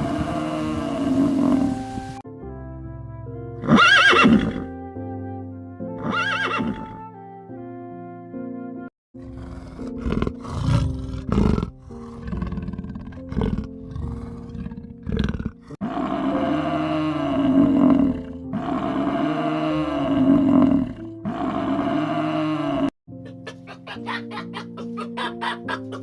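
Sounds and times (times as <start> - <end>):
big cat roaring: 0.0 - 1.8, 9.2 - 22.9
background music: 0.0 - 26.0.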